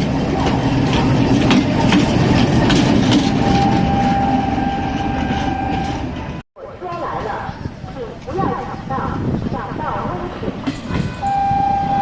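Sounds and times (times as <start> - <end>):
wheels clicking over rails: 0.0 - 7.1
diesel locomotive engine and wheels: 0.0 - 12.0
steady high tone: 3.2 - 6.4.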